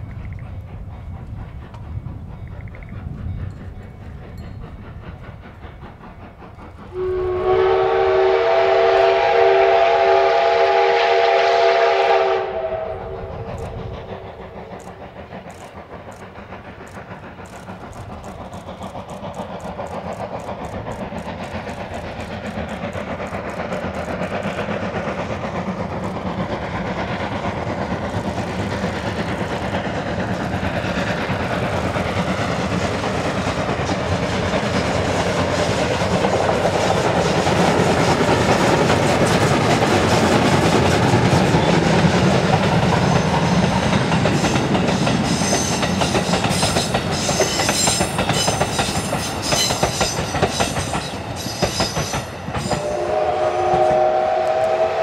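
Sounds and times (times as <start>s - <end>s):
steam locomotive exhaust beats: 0.0s - 55.0s
wheels clattering over rail joints: 13.7s - 52.9s.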